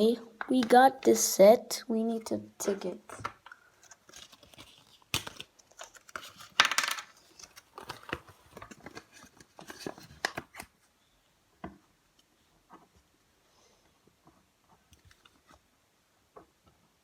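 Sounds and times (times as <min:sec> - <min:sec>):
plastic pieces clicking and clattering: 0:03.2 - 0:10.5.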